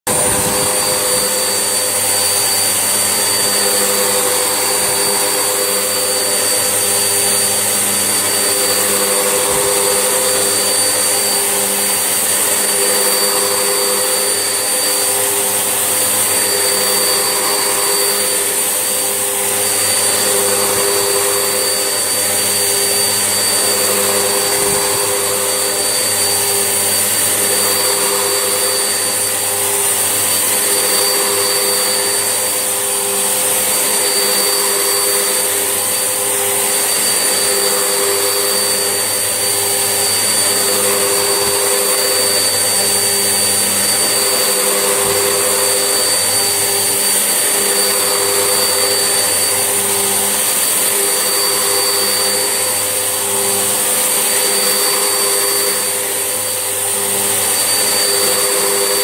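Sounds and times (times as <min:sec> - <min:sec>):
vacuum cleaner whining: 0:00.0 - 0:59.0.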